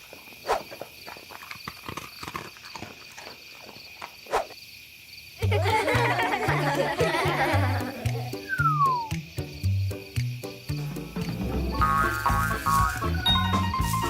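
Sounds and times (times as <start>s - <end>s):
music: 5.5s - 14.0s.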